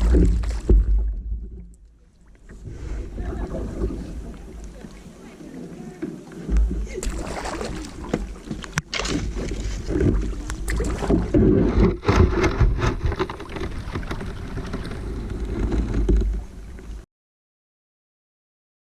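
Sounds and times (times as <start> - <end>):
water splashing around a kayak: 0.0 - 17.0
wind rumble on microphone: 7.6 - 17.0.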